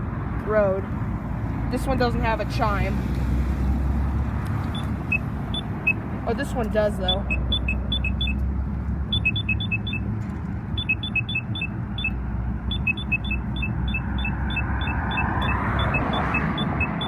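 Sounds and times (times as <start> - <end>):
low traffic rumble: 0.0 - 17.0
vehicle passing: 0.6 - 17.0
crosswalk signal beeping: 4.3 - 17.0.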